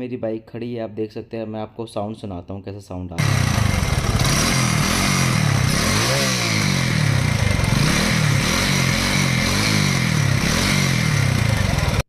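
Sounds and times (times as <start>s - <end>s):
motorcycle engine revving: 3.2s - 12.0s
rattling exhaust: 3.2s - 12.0s.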